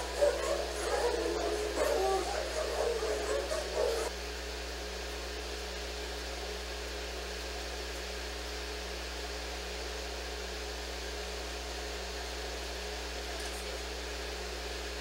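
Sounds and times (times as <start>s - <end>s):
room hiss: 0.0s - 4.1s
low constant hum: 0.0s - 10.2s.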